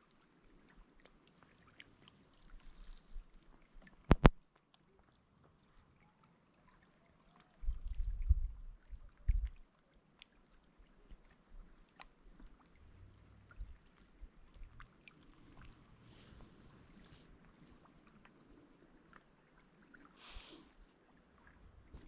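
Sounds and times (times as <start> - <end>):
paddle splashing water: 0.0 - 8.2, 8.9 - 22.0
low rumble on microphone: 7.6 - 9.6, 12.7 - 17.8.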